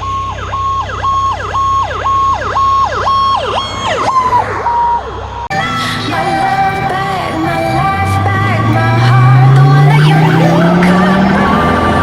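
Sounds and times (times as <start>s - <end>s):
electronic emergency siren: 0.0s - 5.5s, 8.0s - 12.0s
music: 5.5s - 12.0s.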